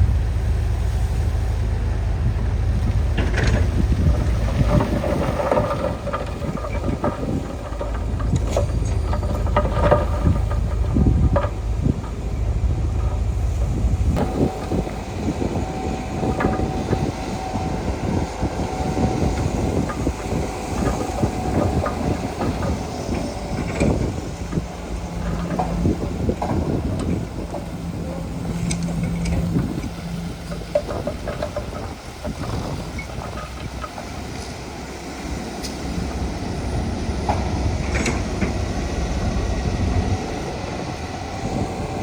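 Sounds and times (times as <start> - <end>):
low hum: 0.0 - 33.4
diesel engine under load: 0.0 - 42.0
steady whine: 0.0 - 42.0
steel crawler tracks clanking: 0.0 - 42.0.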